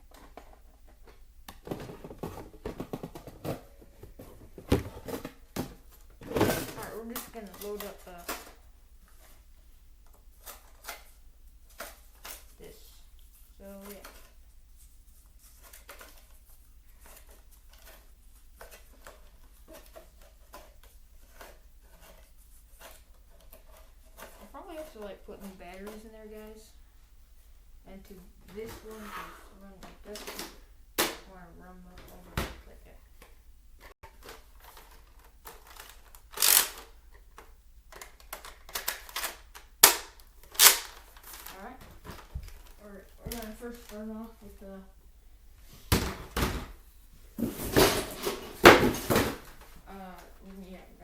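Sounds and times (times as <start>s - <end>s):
plastic toy clicks and knocks: 34.0s - 41.6s.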